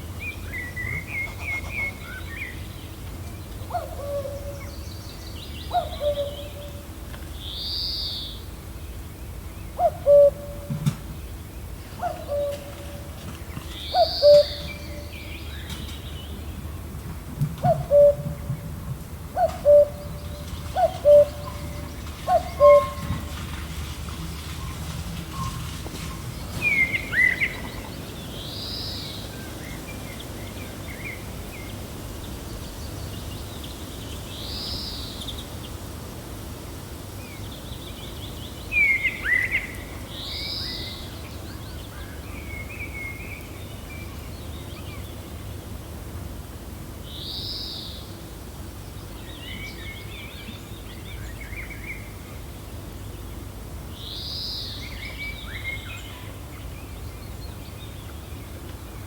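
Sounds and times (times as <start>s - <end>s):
steady low wind: 0.0s - 59.0s
birds chirping: 11.2s - 16.9s, 17.6s - 35.8s.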